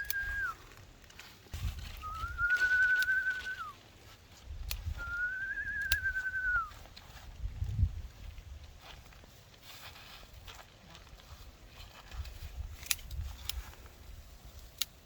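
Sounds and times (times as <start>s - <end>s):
long gliding whistled notes: 0.0s - 0.6s, 1.9s - 3.8s, 4.8s - 6.8s.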